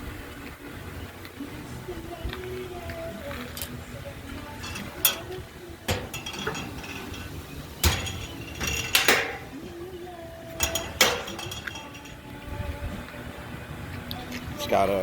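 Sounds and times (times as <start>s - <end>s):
metal clanks and clinks: 4.3s - 12.6s
knocks on steel tank ringing: 4.6s - 9.7s, 10.6s - 12.2s.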